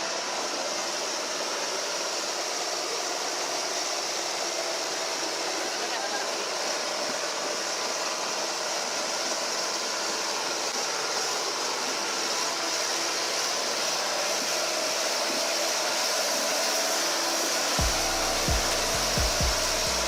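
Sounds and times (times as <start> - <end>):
steady rushing noise: 10.2 - 20.0.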